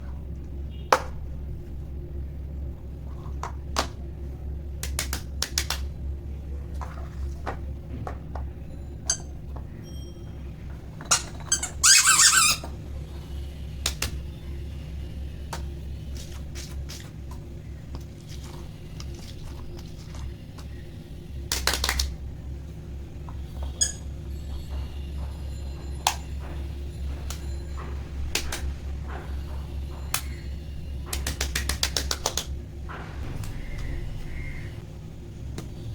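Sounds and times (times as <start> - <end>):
steady low hum: 0.0 - 35.9
fidget toys clicking and squeaking: 11.0 - 12.8.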